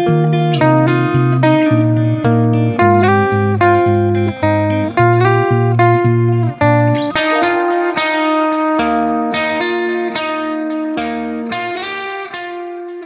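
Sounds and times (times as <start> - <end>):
guitar background music: 0.0 - 13.0
bass line: 0.6 - 7.8.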